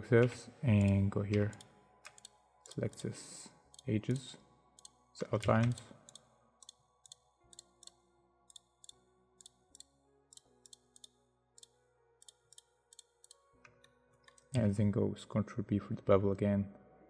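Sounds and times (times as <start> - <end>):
faint background music: 0.0 - 17.0
mouse and keyboard clicking: 0.8 - 3.1, 5.6 - 14.5.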